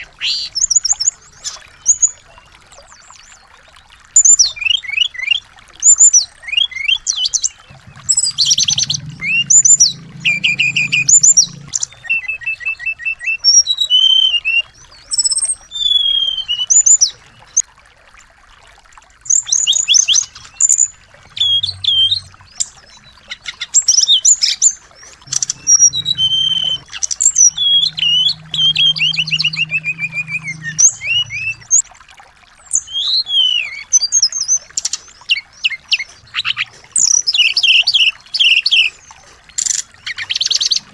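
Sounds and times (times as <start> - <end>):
songbirds chirping and trilling: 6.1 - 17.6, 19.4 - 31.9, 32.6 - 40.9.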